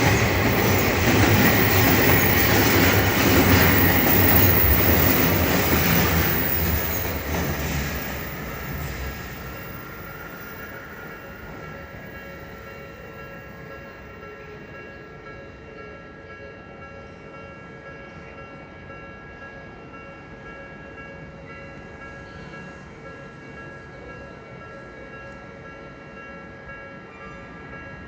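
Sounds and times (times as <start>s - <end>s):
passing train rumble: 0.0s - 15.4s.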